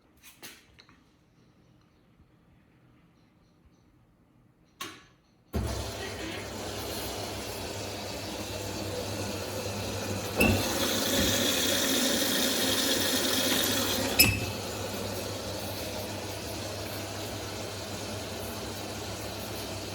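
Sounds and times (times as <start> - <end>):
washing machine running noise: 5.5 - 19.9
washing machine click: 8.8 - 15.2.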